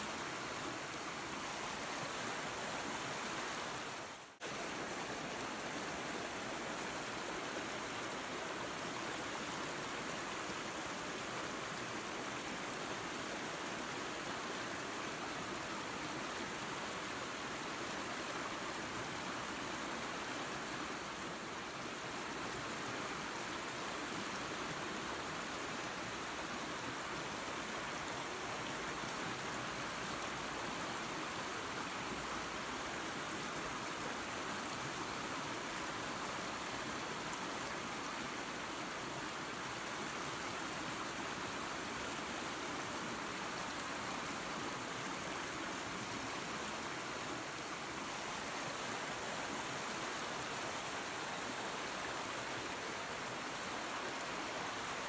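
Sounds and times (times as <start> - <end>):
waterfall and creek rushing: 0.0 - 55.0.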